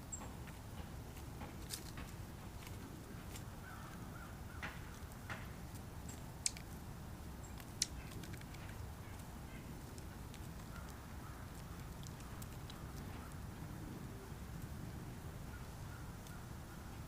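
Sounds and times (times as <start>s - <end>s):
birds and squirrels tapping: 0.0s - 14.8s, 15.5s - 17.0s
faint crow call: 3.1s - 5.5s, 7.9s - 14.3s, 15.4s - 17.0s.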